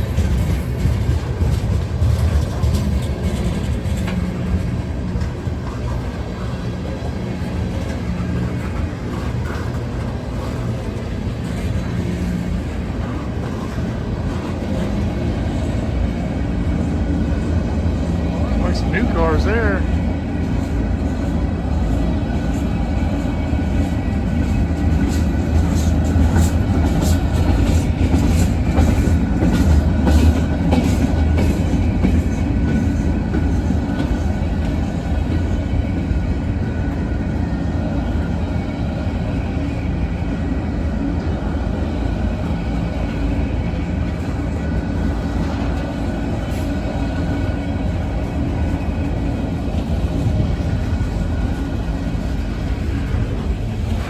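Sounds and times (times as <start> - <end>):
wheels clicking over rail joints: 0.0 - 19.1
train wheels rumbling on rails: 0.0 - 54.0.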